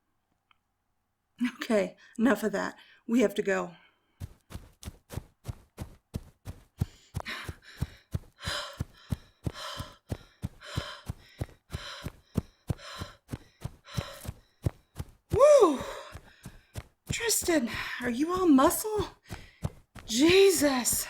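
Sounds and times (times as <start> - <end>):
quick footsteps: 4.1 - 21.0
woman panting heavily: 6.8 - 21.0
woman groaning: 15.4 - 16.0.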